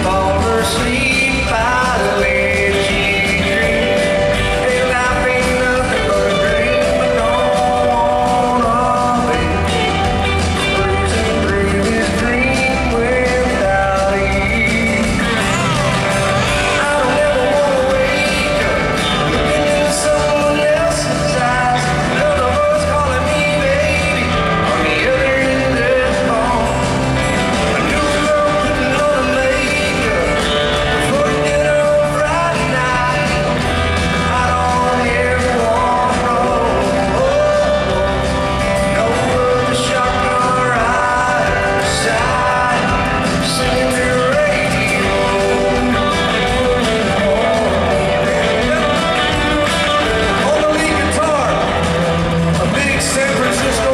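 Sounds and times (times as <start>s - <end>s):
country band playing: 0.0s - 53.9s
man singing: 0.0s - 53.9s.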